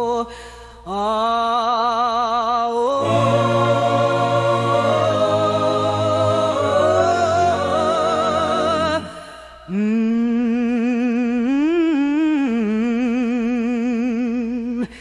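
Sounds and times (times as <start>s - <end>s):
person singing a long vowel: 2.9s - 14.8s.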